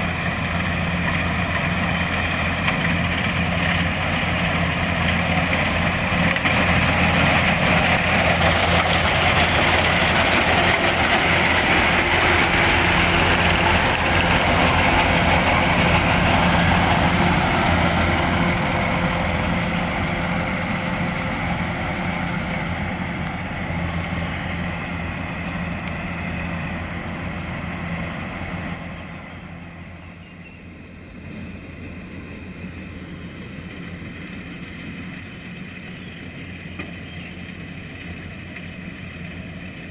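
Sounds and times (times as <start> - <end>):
diesel engine hum: 0.0 - 39.9
threshing machinery rushing: 0.3 - 29.1.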